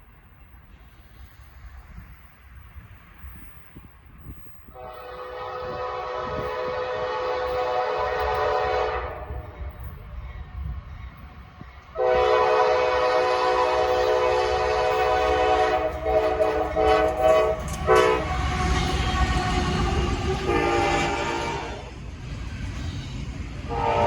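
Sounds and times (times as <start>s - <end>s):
low rumble of train: 0.0s - 24.0s
locomotive air horn blasts: 4.8s - 9.5s, 12.0s - 21.9s, 23.7s - 24.0s.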